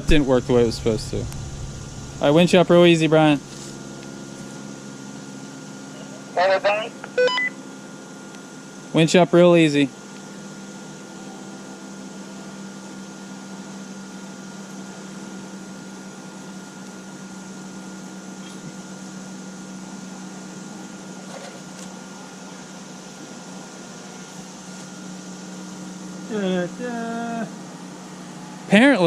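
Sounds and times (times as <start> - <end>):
crane engine humming: 0.0 - 8.8.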